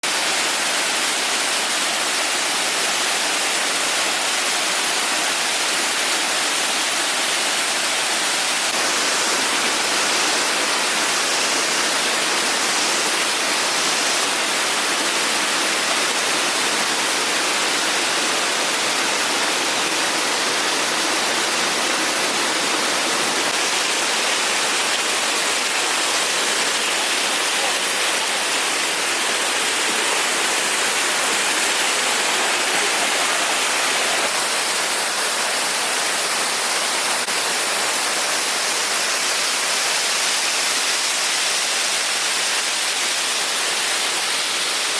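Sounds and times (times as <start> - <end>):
waterfall rushing: 0.0 - 44.9.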